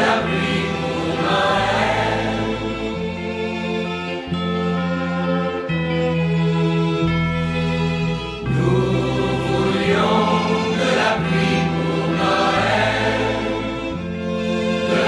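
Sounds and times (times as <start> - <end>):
wordless choir singing: 0.0 - 4.3, 8.4 - 15.0
pop song instrumental: 0.0 - 6.4, 8.1 - 15.0
bass line: 0.0 - 15.0.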